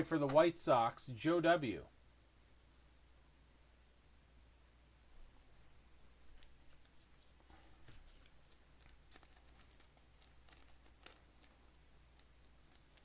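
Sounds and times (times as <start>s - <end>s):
trading cards rustling and clicking: 6.4s - 13.0s.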